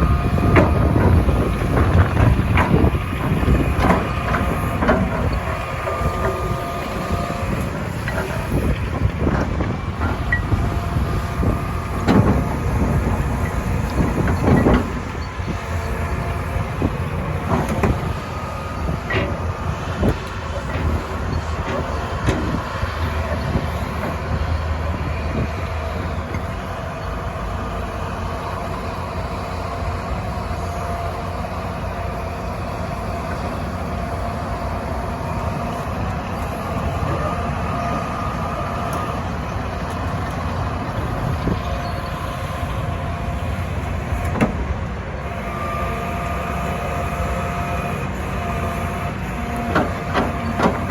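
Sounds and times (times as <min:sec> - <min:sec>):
excavator running: 0:00.0 - 0:50.9
knocks and clanks: 0:00.3 - 0:24.3, 0:44.1 - 0:44.7, 0:49.6 - 0:50.9.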